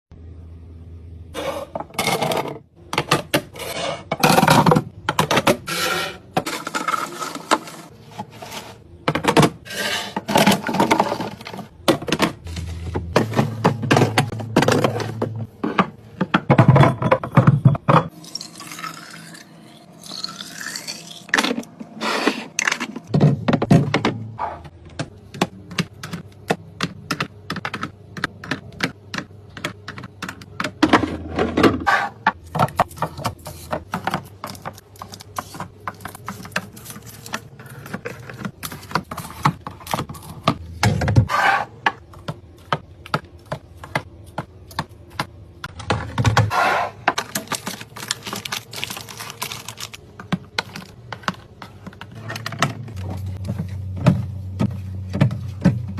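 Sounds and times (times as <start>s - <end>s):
containers clicking and knocking: 24.9s - 46.5s, 47.1s - 55.9s.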